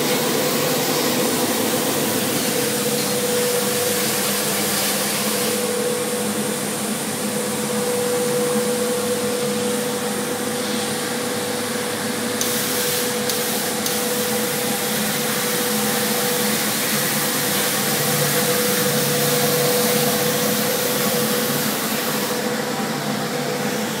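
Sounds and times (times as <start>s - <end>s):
sandblasting air hiss: 0.0s - 5.8s, 12.4s - 22.6s.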